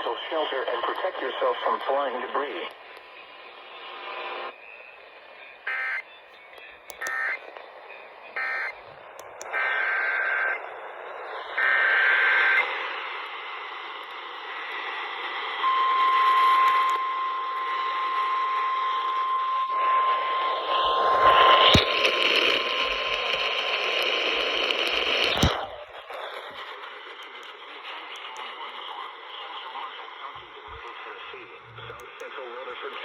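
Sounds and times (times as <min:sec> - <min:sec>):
radio static hiss: 0:00.0 - 0:33.0
steady alarm tone: 0:15.6 - 0:25.2.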